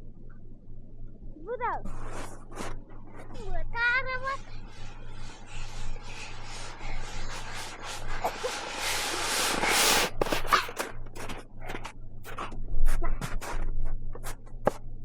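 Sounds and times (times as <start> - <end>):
rubbing scraping strokes: 1.9 - 11.4.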